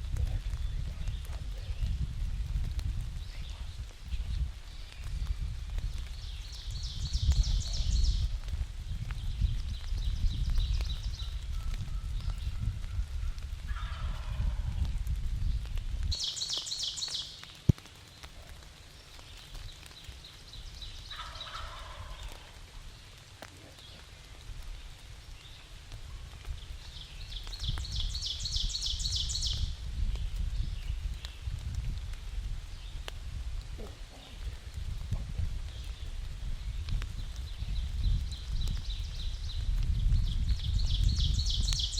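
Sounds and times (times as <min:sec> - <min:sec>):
wind rumble on microphone: 0:00.0 - 0:41.9
turkey gobbling: 0:21.1 - 0:22.5.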